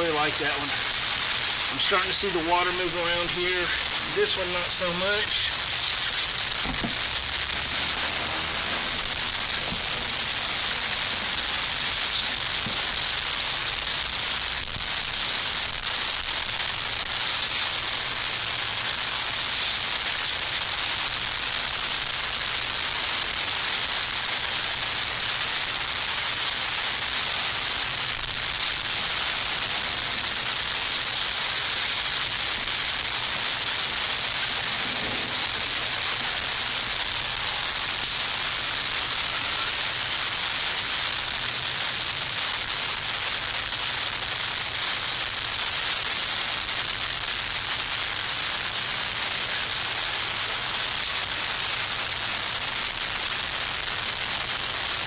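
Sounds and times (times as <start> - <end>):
fire crackles: 0.0 - 55.0
wood fire hissing: 0.0 - 55.0.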